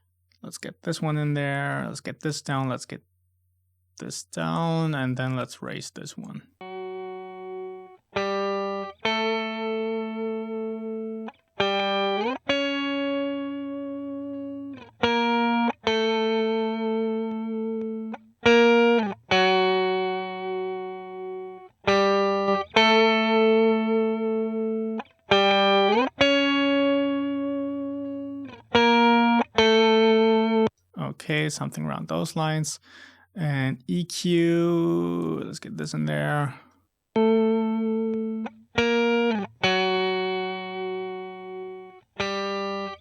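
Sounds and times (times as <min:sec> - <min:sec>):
clean electric guitar notes: 0:06.6 - 0:30.7, 0:37.2 - 0:43.0.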